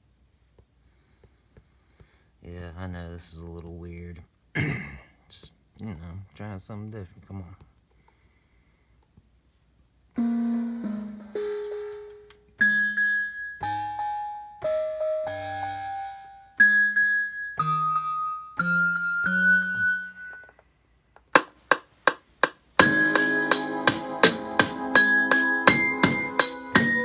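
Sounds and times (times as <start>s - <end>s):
low bass notes: 10.2s - 12.2s
bell-like electric keyboard notes: 10.2s - 20.4s, 22.8s - 27.0s.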